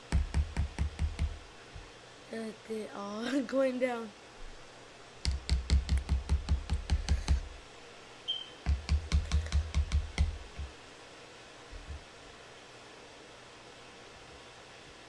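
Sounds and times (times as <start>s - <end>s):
short high chirp: 8.3s - 8.6s
spoon knocking against mixing bowl: 8.7s - 10.7s.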